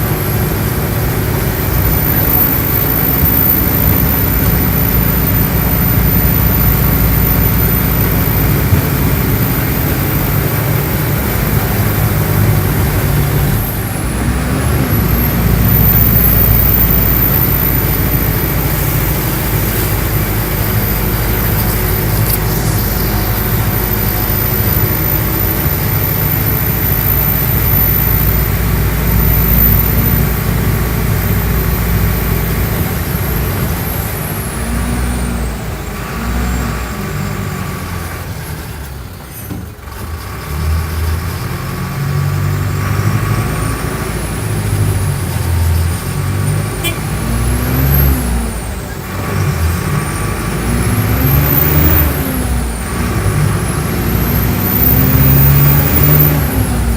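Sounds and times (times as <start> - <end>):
high turbo whistle: 0.0 - 32.2
bus diesel engine running: 0.0 - 56.9.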